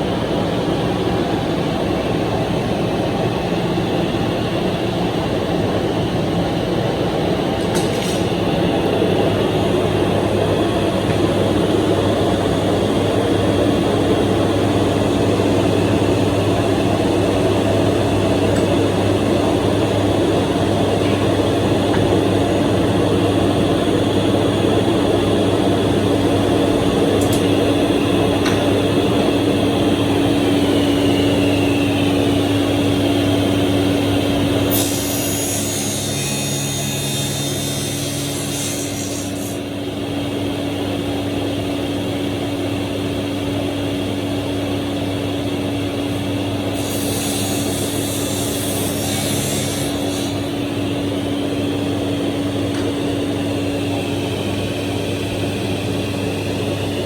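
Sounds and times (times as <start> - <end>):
panel saw humming: 7.1 - 40.1, 45.8 - 57.0.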